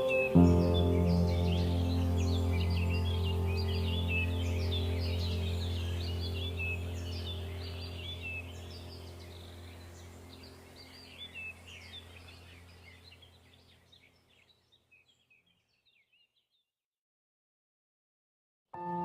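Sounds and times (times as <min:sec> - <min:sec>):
small birds chirping: 0:00.0 - 0:16.7
steady low hum: 0:00.5 - 0:13.0.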